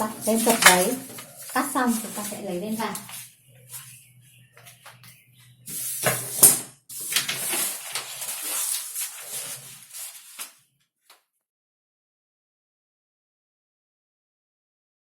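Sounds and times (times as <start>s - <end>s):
paper and fabric rustling: 0.0s - 10.6s.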